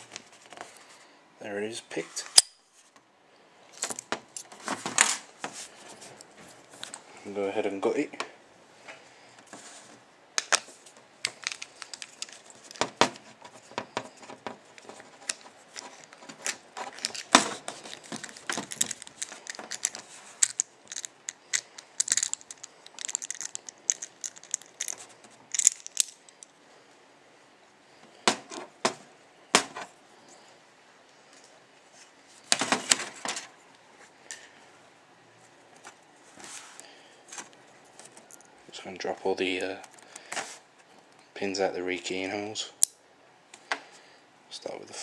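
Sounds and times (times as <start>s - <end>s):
padlock metallic clicks and clatters: 14.8s - 26.5s.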